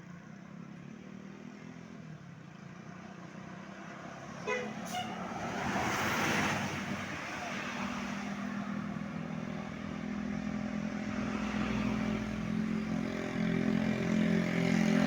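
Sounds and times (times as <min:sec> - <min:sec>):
bus engine humming: 0:04.4 - 0:05.8.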